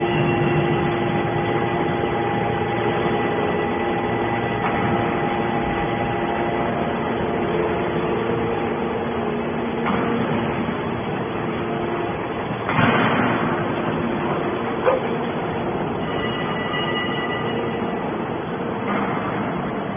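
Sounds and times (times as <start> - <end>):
hydraulic pump whine: 0.0 - 19.9
machine hum: 0.0 - 19.9.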